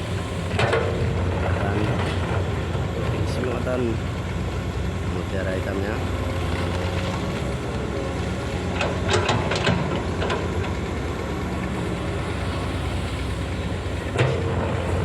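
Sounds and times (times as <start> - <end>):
excavator diesel engine running: 0.0 - 15.0
metal clanks and knocks: 8.8 - 10.6.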